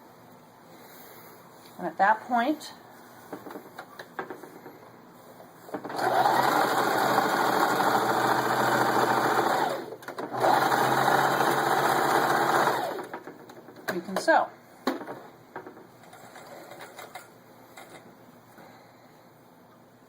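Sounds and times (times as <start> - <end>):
sewing machine stitching: 5.8 - 13.4.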